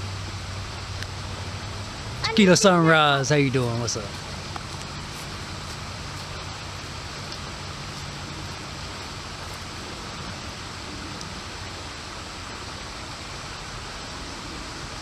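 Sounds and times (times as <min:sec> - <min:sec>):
creek water flowing: 0:00.0 - 0:15.0.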